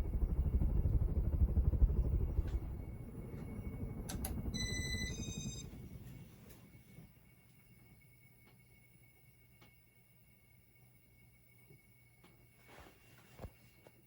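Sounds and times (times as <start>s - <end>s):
ceiling fan air rumble: 0.0s - 9.6s
short electronic beep: 4.6s - 5.7s.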